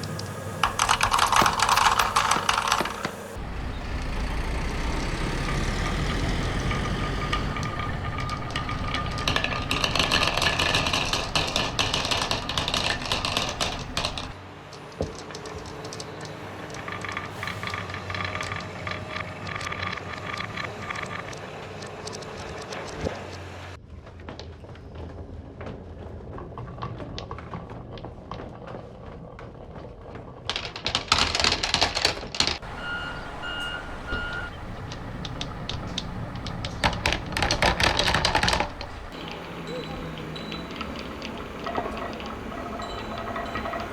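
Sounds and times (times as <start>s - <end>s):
marbles clattering on wooden run: 0.0s - 3.4s, 5.5s - 14.4s, 15.0s - 23.4s, 26.6s - 32.7s, 34.3s - 43.9s
short beeps: 32.7s - 34.6s.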